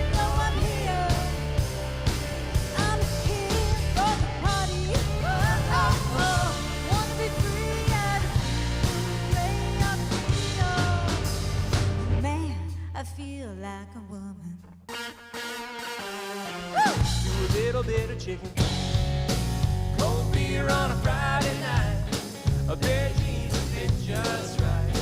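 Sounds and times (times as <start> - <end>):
person singing: 0.0 - 1.4, 2.7 - 8.4, 9.3 - 11.3, 20.0 - 25.0
country band playing: 0.0 - 12.2, 14.9 - 25.0.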